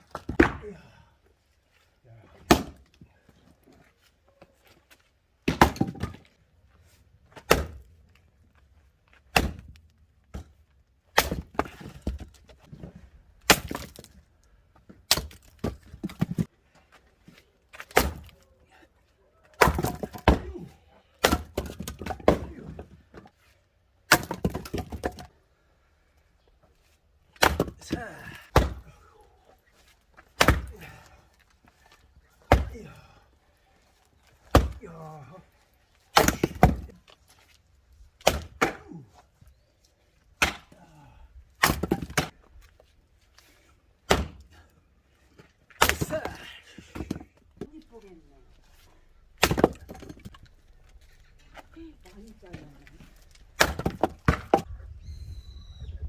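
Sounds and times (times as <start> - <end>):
axe splitting logs: 0.0 - 0.9, 2.3 - 3.0, 5.4 - 6.3, 7.2 - 8.2, 9.1 - 14.2, 14.8 - 16.6, 17.2 - 18.5, 19.4 - 23.4, 24.0 - 25.3, 26.8 - 33.2, 34.0 - 35.2, 35.9 - 37.6, 38.2 - 39.2, 40.2 - 44.6, 45.4 - 48.0, 48.7 - 54.7
split wood pieces falling: 9.1 - 14.3, 14.9 - 16.5, 19.4 - 23.4, 24.0 - 25.3, 41.6 - 42.9, 45.4 - 48.0, 48.7 - 54.7.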